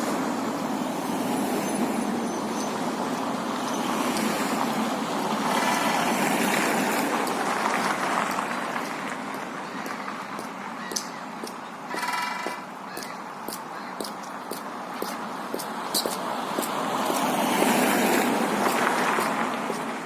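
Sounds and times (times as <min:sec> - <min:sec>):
road traffic: 0:00.0 - 0:20.0
vehicle passing: 0:00.0 - 0:20.0
woodpecker drumming on metal: 0:11.9 - 0:12.8.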